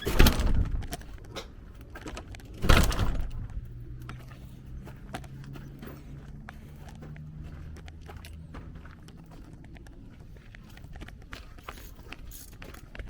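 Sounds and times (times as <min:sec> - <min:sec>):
loud thuds with rattling tail: 0:00.0 - 0:01.0, 0:02.6 - 0:03.6.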